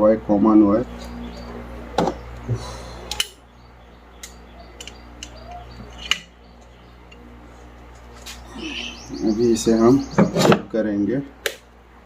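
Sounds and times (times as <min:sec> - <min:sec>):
hand tools and wires clicking: 0:03.1 - 0:03.4, 0:04.2 - 0:07.3.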